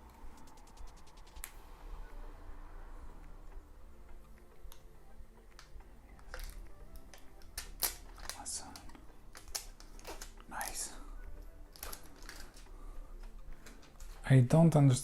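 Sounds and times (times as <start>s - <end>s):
soft background music: 0.0s - 15.0s
packaging ticks and clicks: 5.5s - 10.9s, 11.7s - 14.2s.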